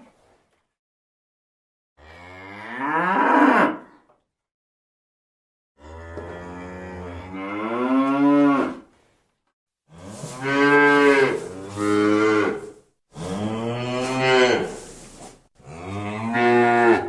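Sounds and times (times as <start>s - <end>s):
cow mooing: 2.0s - 3.9s, 5.8s - 8.9s, 9.9s - 14.8s, 15.6s - 17.0s.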